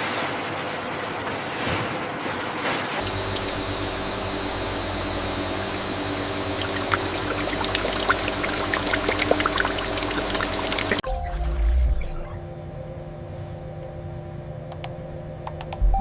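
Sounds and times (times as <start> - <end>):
liquid pouring and splashing: 3.0 - 11.0
machine hum: 3.0 - 16.0
small clicks and drips: 6.5 - 11.0.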